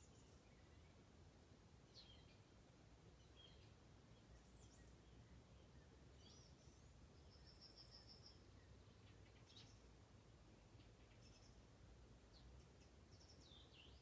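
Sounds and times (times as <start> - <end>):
songbirds chirping: 0.0 - 14.0.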